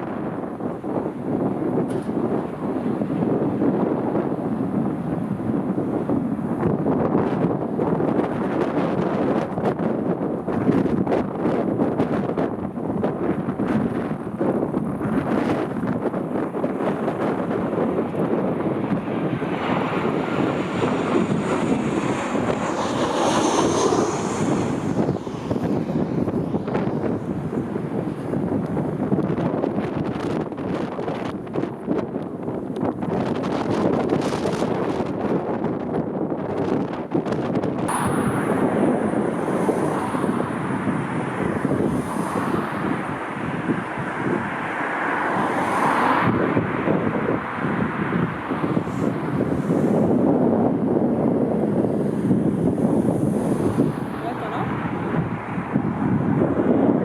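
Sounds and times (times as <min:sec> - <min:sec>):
distant airliner engine whine: 0:00.0 - 0:57.0
wind buffeting microphone: 0:00.0 - 0:57.0
thin high whine: 0:37.9 - 0:42.1.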